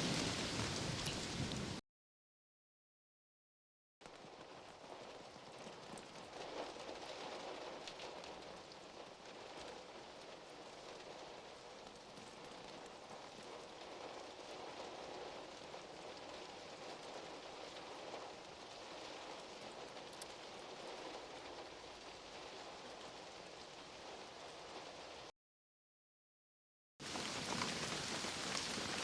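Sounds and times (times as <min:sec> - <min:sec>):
steady rain falling: 0:00.0 - 0:01.8, 0:04.0 - 0:25.3, 0:27.0 - 0:29.0.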